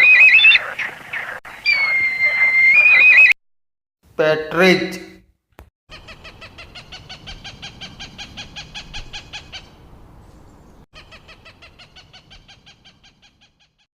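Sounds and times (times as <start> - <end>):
partridge calling: 0.0 - 3.3, 5.9 - 9.8, 11.0 - 13.8.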